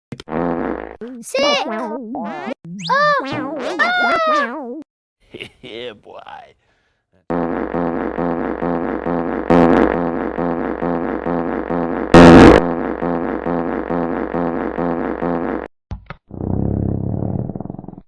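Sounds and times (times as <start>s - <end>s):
loud noisy blasts: 7.3s - 14.9s
low buzzing: 7.3s - 15.7s.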